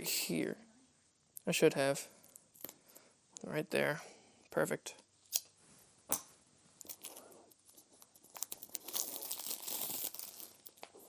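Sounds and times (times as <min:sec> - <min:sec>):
plastic wrapping tearing: 0:08.3 - 0:11.0.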